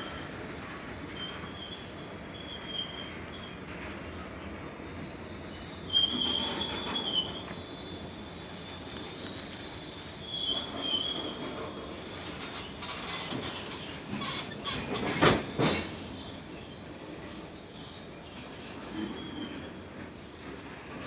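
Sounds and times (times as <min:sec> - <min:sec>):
railway wagons rumbling: 0:00.1 - 0:21.0
wheels squealing: 0:05.0 - 0:16.9.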